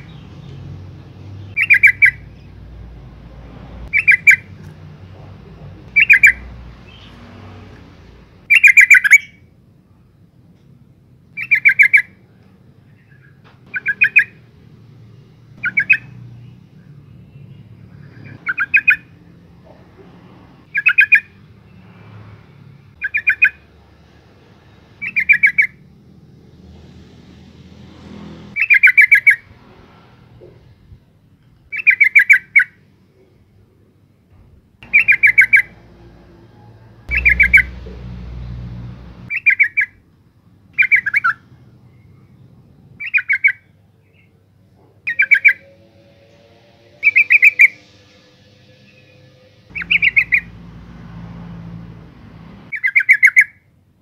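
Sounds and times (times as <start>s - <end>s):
bird chattering calls: 1.6s - 2.2s, 3.9s - 4.5s, 5.9s - 7.1s, 34.8s - 35.8s, 37.1s - 37.8s, 49.7s - 50.6s.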